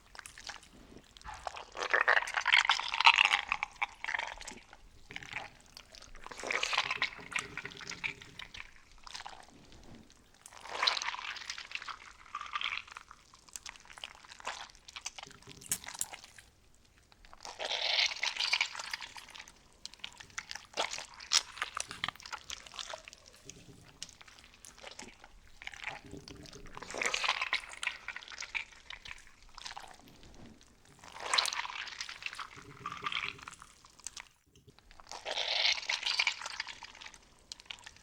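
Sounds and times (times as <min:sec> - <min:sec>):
slime clicking and popping: 0:15.5 - 0:16.3.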